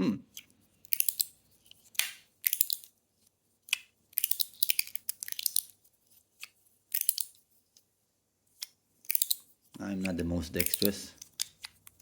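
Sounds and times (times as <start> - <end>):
fidget toy clicking and rattling: 8.6 - 12.0.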